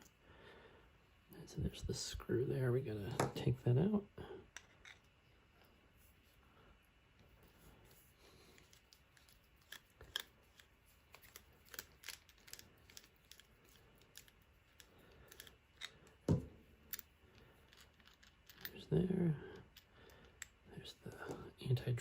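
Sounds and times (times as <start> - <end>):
screwdriver clicking and scraping: 8.6 - 16.1.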